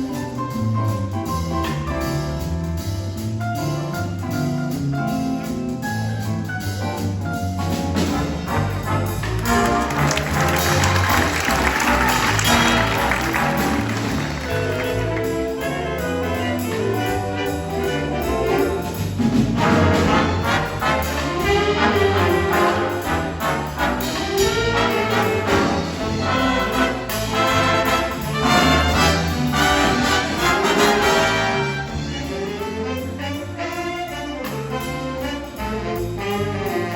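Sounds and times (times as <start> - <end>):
jazz band playing: 0.0 - 36.9
low bass line: 0.0 - 36.9
trumpets and trombones: 7.7 - 36.9.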